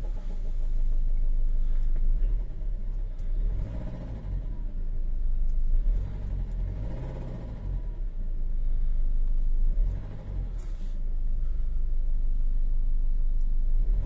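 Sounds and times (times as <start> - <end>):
diesel engine knocking: 0.0 - 4.7.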